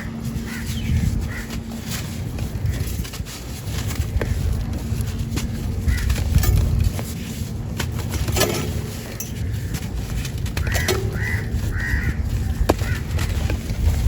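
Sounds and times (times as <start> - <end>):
bird calling: 0.0 - 2.9, 10.6 - 13.5
steady low rumble: 0.0 - 14.0.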